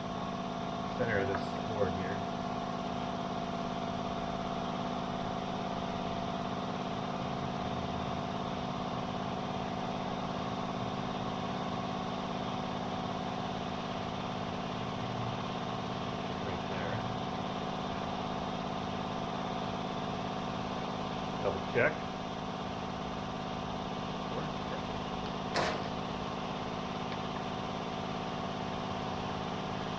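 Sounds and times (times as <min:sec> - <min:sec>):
machinery hum with droning tones: 0:00.0 - 0:29.9.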